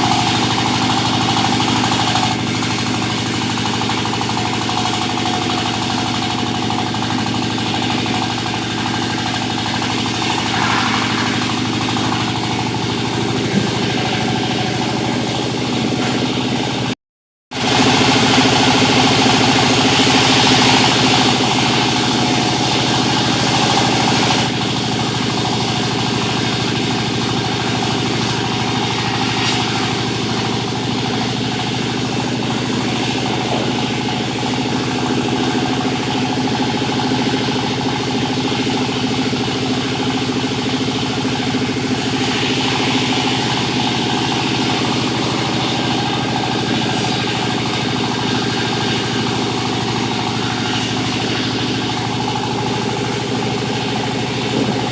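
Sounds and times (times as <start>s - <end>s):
engine hum: 0.0s - 17.0s, 28.1s - 54.9s
sawmill machinery sawing logs: 0.0s - 17.0s, 17.6s - 54.9s.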